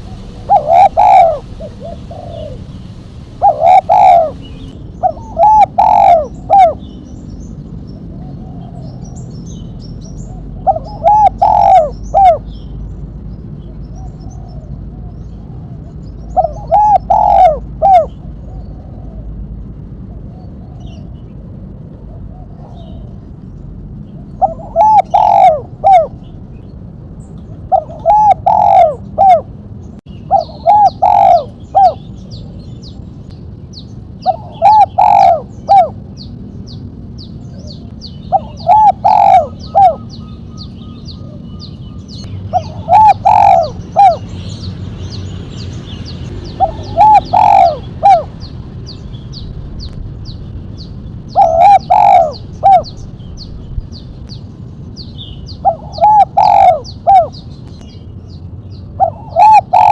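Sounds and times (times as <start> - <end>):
dove cooing: 0.0 - 7.0, 10.2 - 12.5, 14.0 - 19.3, 24.3 - 26.2, 27.7 - 29.5, 30.3 - 32.3, 34.2 - 36.0, 37.5 - 44.4, 46.5 - 48.5, 51.3 - 53.1, 55.5 - 57.5, 59.0 - 59.9
small birds chirping: 0.0 - 59.9.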